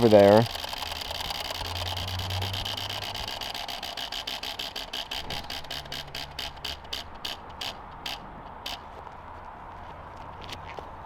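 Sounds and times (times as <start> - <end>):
prize wheel clicker ticking: 0.0 - 8.8.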